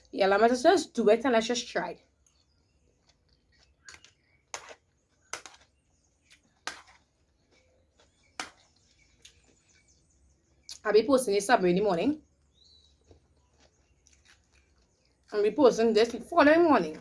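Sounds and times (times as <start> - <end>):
wet chewing smacks: 2.0 - 10.9, 12.2 - 15.4.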